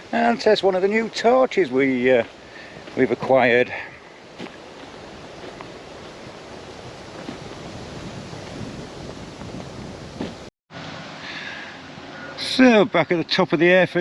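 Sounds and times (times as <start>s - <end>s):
wind buffeting microphone: 0.7s - 10.5s.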